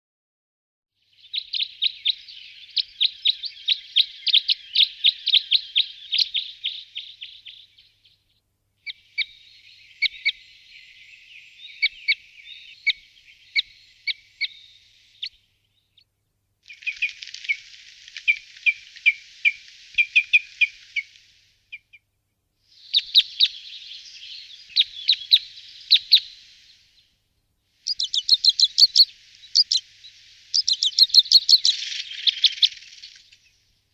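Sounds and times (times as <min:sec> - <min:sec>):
small birds chirping: 0:01.0 - 0:27.2, 0:27.8 - 0:33.9.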